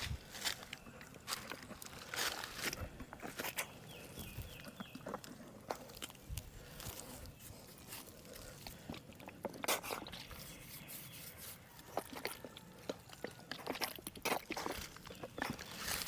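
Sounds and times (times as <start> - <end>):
footsteps crunching in dry leaves: 0.0 - 3.6, 14.8 - 16.0.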